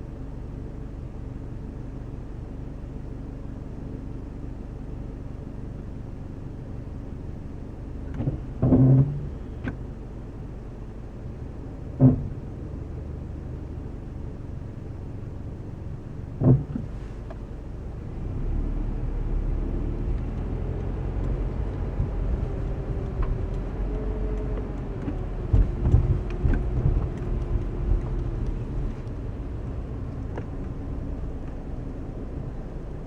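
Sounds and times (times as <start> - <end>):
car engine and road noise: 0.0 - 33.0
low knocks: 11.9 - 12.5, 16.4 - 16.9
sharp thump: 12.0 - 12.4, 16.4 - 16.9.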